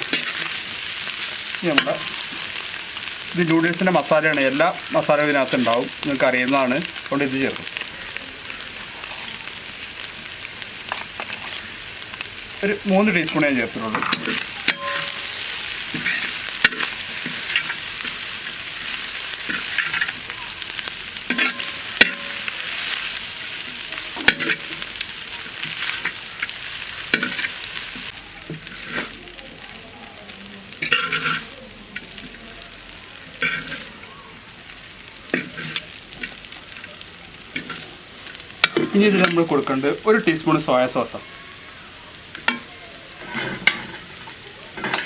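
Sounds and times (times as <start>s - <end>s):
spatula scraping a pan: 0.0s - 6.6s, 8.7s - 9.6s, 12.9s - 29.2s, 30.8s - 32.3s, 33.4s - 34.1s, 35.3s - 36.9s, 37.5s - 39.4s, 42.4s - 45.0s
noodles sizzling in a pan: 0.0s - 45.0s.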